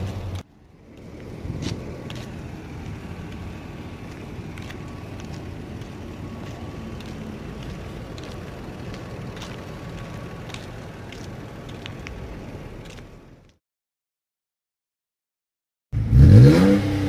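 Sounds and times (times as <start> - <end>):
exhaust rumble at idle: 0.0 - 13.5.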